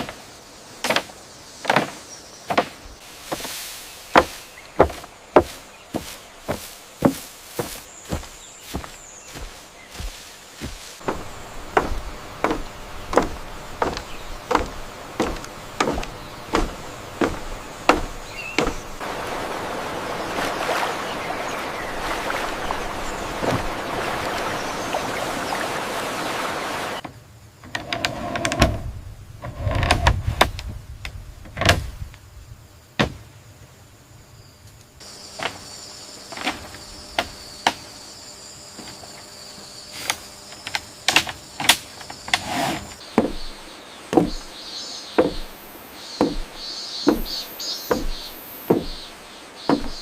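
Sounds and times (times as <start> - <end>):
rush of water: 3.0 - 27.1
wood knocking and clicking: 4.1 - 19.0, 43.1 - 44.6, 45.2 - 45.6, 46.2 - 50.0.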